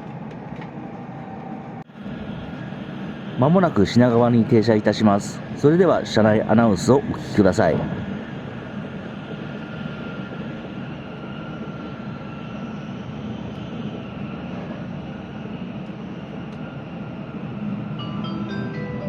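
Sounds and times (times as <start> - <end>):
train rumble and hiss from inside: 0.0 - 19.0
bell-like chime: 18.0 - 19.0.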